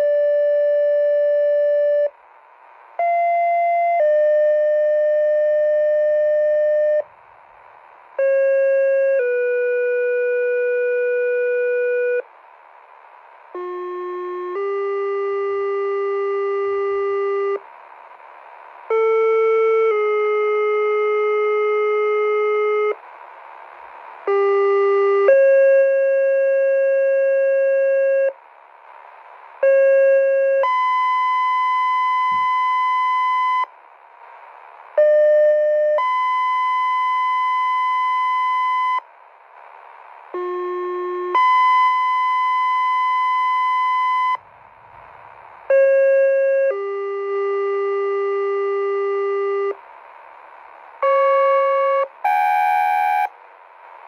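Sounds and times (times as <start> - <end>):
radio hiss: 11.7 - 14.6, 16.9 - 19.2, 22.6 - 47.2, 49.0 - 52.3
two-tone paging tones: 40.7 - 44.4, 51.0 - 53.3.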